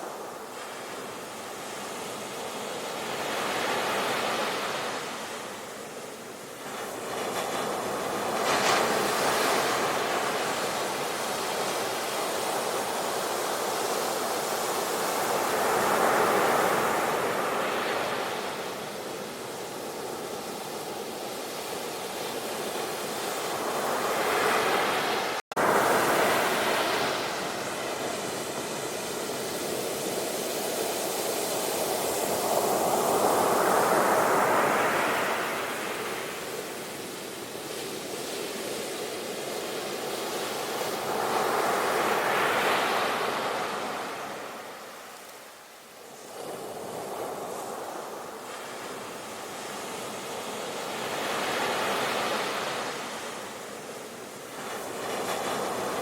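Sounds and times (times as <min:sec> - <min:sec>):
sea waves washing onto shore: 0:00.0 - 0:56.0.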